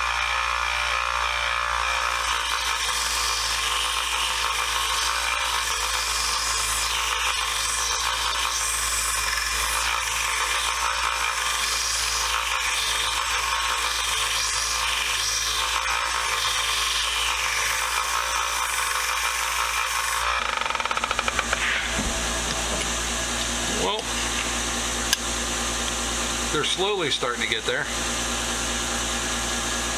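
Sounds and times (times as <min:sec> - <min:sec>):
power tool grinding: 0:00.0 - 0:29.9
low motor hum: 0:20.6 - 0:29.9.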